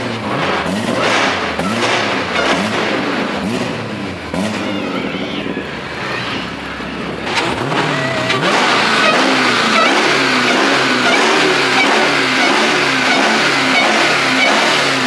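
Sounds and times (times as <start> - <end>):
car engine revving: 0.0 - 15.0.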